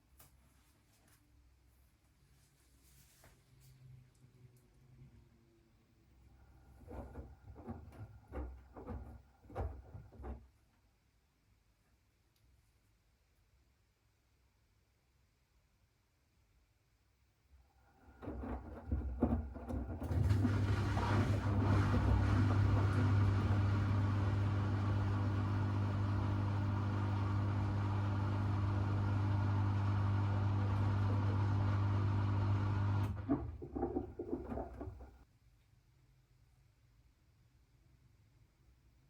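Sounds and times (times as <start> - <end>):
washing machine drain pump running: 18.0 - 35.2
pump slurping air: 18.2 - 35.0.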